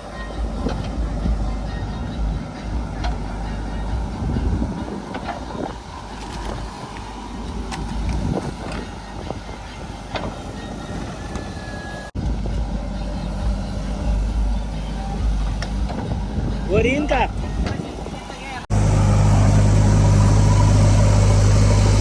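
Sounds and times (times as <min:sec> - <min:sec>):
heavy vehicle engine running: 0:00.0 - 0:22.0.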